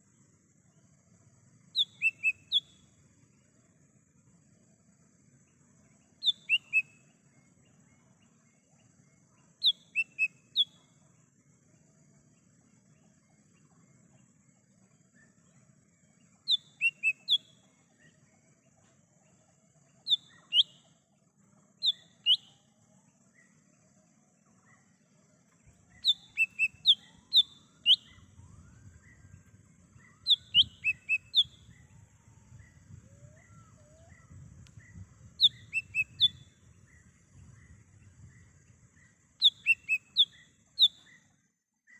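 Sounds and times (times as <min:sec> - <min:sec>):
bird whistled calls: 0:01.8 - 0:02.8, 0:06.2 - 0:07.0, 0:09.6 - 0:10.8, 0:16.5 - 0:17.6, 0:20.1 - 0:20.8, 0:21.8 - 0:22.6, 0:25.9 - 0:38.5, 0:39.4 - 0:41.3
faint other birds calling: 0:12.1 - 0:41.9.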